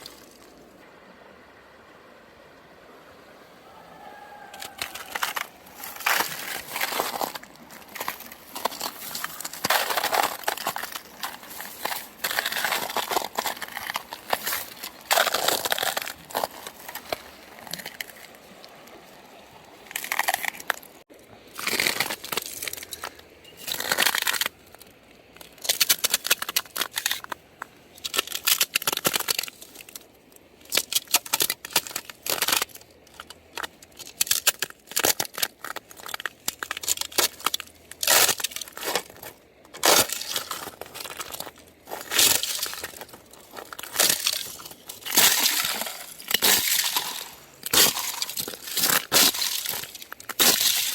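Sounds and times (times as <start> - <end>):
ice crackling: 4.3 - 50.9
footsteps crunching on ice: 4.5 - 21.0, 34.4 - 50.9.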